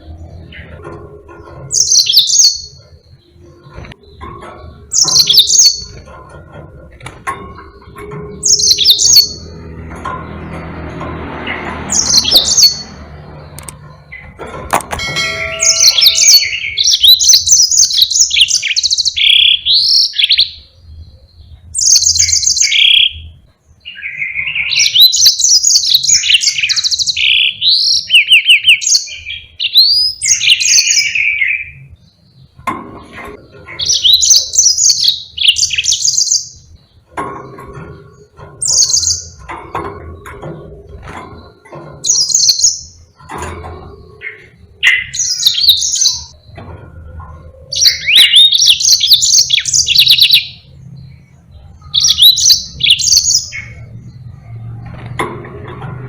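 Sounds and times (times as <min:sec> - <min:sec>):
finch singing trills: 0:00.0 - 0:06.5, 0:07.4 - 0:10.7, 0:11.5 - 0:13.0, 0:15.0 - 0:40.3, 0:41.0 - 0:43.2, 0:43.8 - 0:46.6, 0:47.3 - 0:54.3
sharp click: 0:13.6 - 0:13.9.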